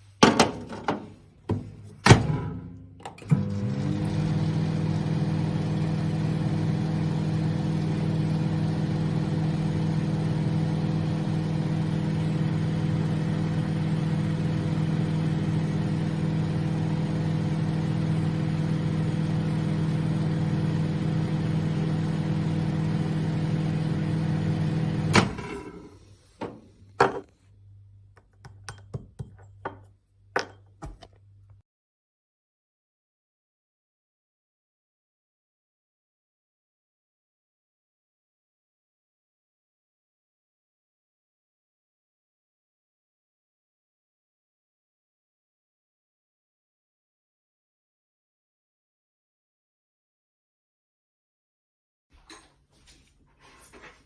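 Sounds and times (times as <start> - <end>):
microwave oven humming: 2.2 - 26.1.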